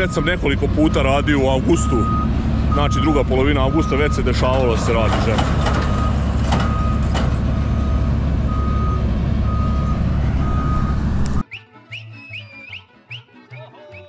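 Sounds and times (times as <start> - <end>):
combine harvester running: 0.0 - 11.4
background music: 11.4 - 14.0.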